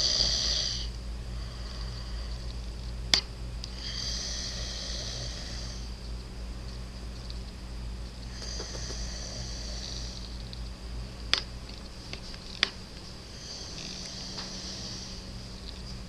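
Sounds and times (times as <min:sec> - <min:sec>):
man snoring: 0:00.0 - 0:02.5, 0:03.7 - 0:05.9, 0:08.3 - 0:10.4, 0:13.3 - 0:15.3
steady low hum: 0:00.0 - 0:16.0.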